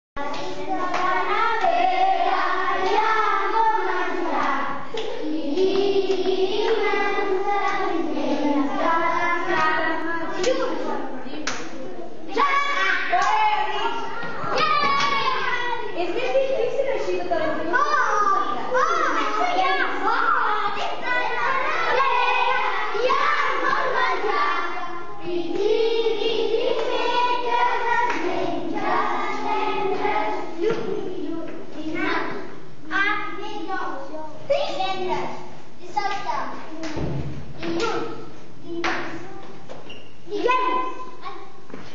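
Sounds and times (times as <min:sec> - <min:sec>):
children singing: 0:00.2 - 0:11.1, 0:12.3 - 0:16.1, 0:17.8 - 0:32.5.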